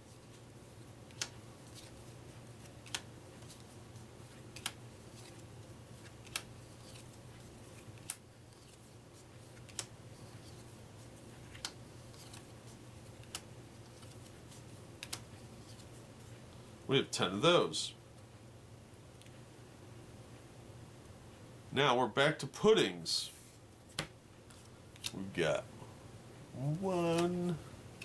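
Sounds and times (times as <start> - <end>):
faint steady hum: 0.0 - 28.0
playing cards tapped down: 2.8 - 3.1, 6.2 - 7.0, 13.2 - 14.3, 15.0 - 15.3, 23.9 - 25.2.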